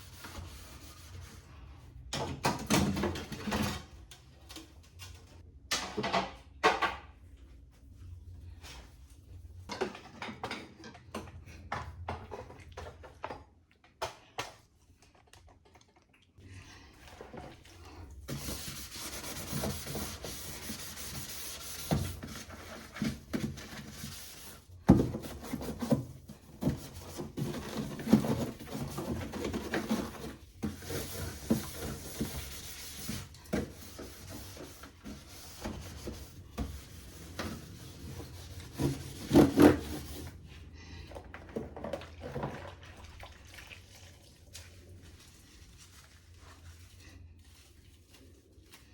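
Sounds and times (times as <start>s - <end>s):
rubbing and scrubbing: 0.0s - 1.7s, 16.9s - 40.5s, 41.7s - 48.9s
shelves and containers clattering: 9.6s - 13.6s, 21.9s - 40.4s, 41.0s - 43.0s.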